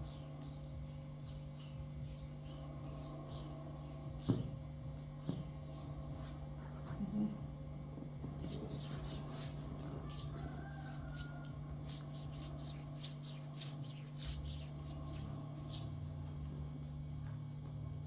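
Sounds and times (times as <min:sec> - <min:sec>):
steady low hum: 0:00.0 - 0:18.0
hands rubbing skin: 0:08.3 - 0:17.8.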